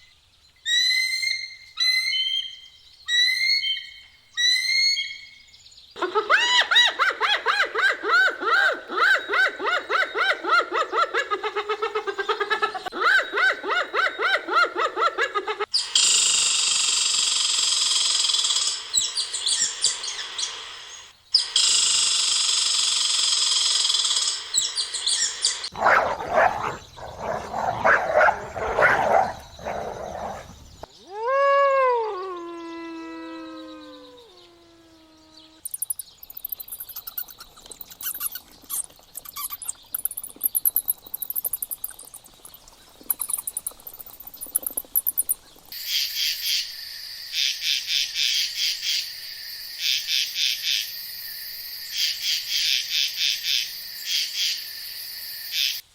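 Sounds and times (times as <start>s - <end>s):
high hissing animal calls: 15.7s - 22.6s, 23.2s - 31.3s, 32.1s - 55.8s
rising and falling call: 25.7s - 31.4s
rapid high chirps: 35.7s - 45.3s.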